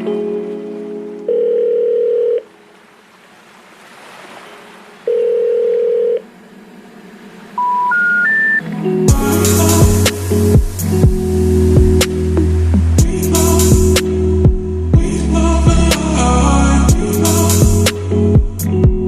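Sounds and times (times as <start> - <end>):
long flat beeps: 7.6 - 8.6
electronic background music: 7.6 - 19.0
beat with deep drum: 9.1 - 16.0, 16.9 - 19.0.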